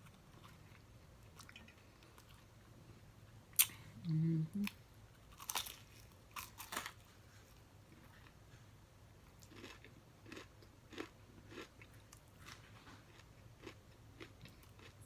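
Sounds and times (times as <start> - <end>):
person biting and chewing food: 9.4 - 15.0.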